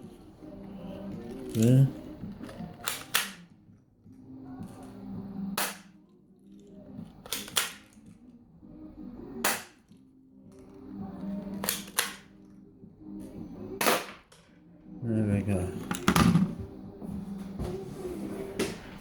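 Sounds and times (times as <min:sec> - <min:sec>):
toy pistol firing sharp cracks: 0:02.4 - 0:03.5, 0:05.6 - 0:06.0, 0:07.2 - 0:08.0, 0:09.4 - 0:09.9, 0:11.6 - 0:12.3, 0:13.8 - 0:14.4.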